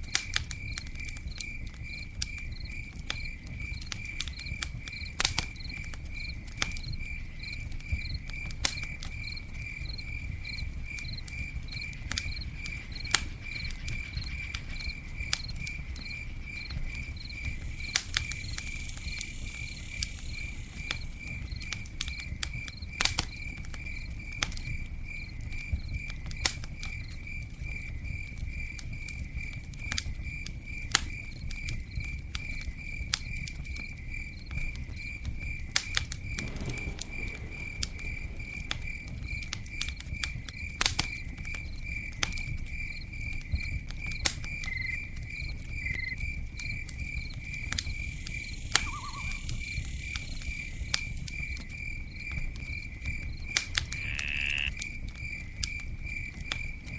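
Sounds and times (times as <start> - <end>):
campfire crackling and popping: 0.0 - 56.9
insect chirping: 1.4 - 24.1, 36.2 - 39.8, 44.6 - 55.4.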